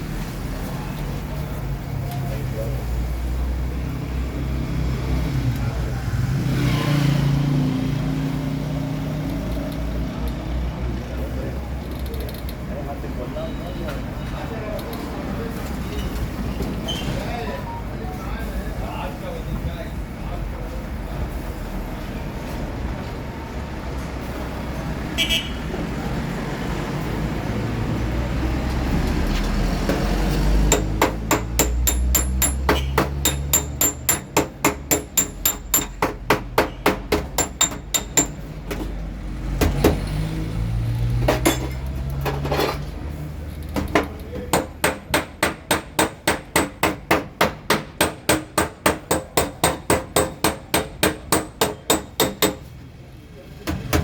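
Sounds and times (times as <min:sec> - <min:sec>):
hammer tapping sheet metal: 0:29.9 - 0:38.9, 0:43.8 - 0:52.7.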